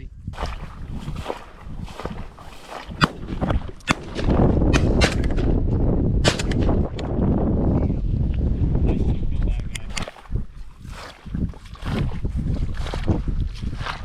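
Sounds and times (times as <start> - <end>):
low rumble on microphone: 0.0 - 14.0
shotgun shots: 3.0 - 5.5, 6.2 - 6.7.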